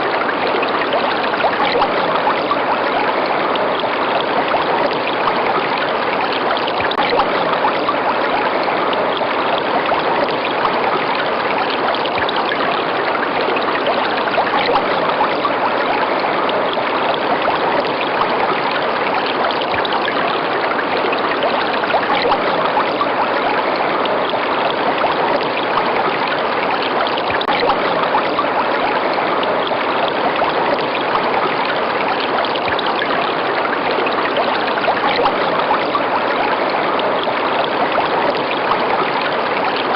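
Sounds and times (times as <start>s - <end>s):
river water flowing over rocks: 0.0s - 39.9s.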